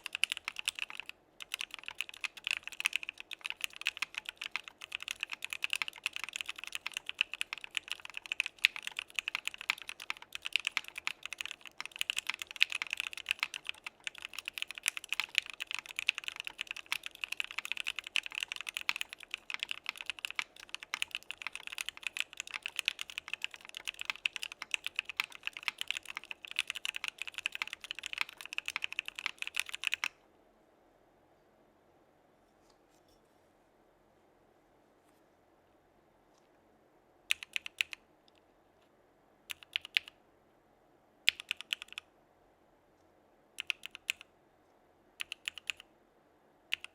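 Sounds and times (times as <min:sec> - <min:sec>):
fast typing on mechanical keyboard: 0:00.0 - 0:30.2, 0:37.3 - 0:38.0, 0:39.5 - 0:40.1, 0:41.3 - 0:42.0, 0:43.6 - 0:44.3, 0:45.2 - 0:45.8.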